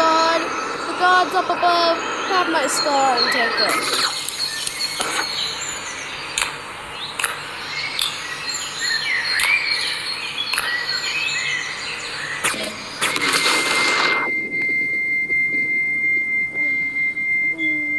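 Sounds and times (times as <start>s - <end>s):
sharp clicks: 0.0s - 5.6s, 6.3s - 8.4s, 9.3s - 11.1s, 12.4s - 15.6s
insect-like hiss: 0.0s - 17.8s
birds chirping: 0.0s - 17.9s.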